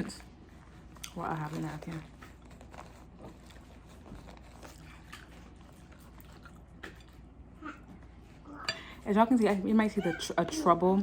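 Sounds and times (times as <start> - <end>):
person chewing food: 0.1 - 8.4.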